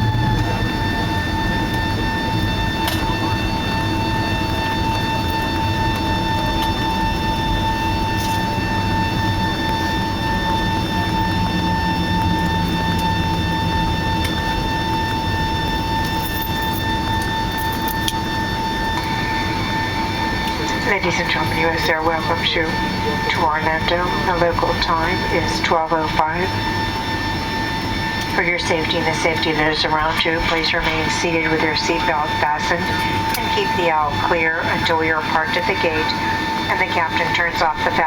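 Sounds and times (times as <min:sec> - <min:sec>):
air rumble: 0:00.0 - 0:02.7
jet engine whine in cabin: 0:00.0 - 0:38.0.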